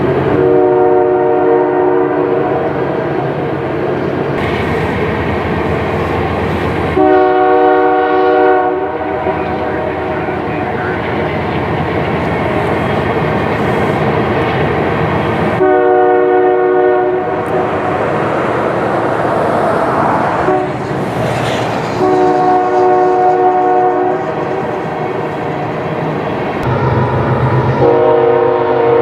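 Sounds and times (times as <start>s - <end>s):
moving train rumble: 0.0s - 29.0s
locomotive air horn blasts: 0.3s - 2.6s, 7.0s - 10.0s, 15.6s - 17.5s, 20.4s - 20.9s, 21.9s - 24.5s, 27.7s - 29.0s.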